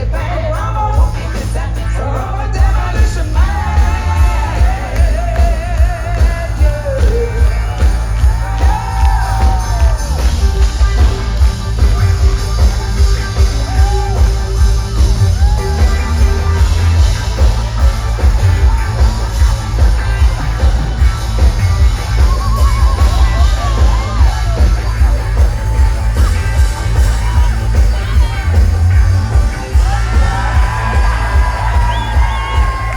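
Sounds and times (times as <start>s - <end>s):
person singing: 0.0s - 10.2s
live rock band playing: 0.0s - 32.9s
pulsing bass beat: 0.0s - 32.9s.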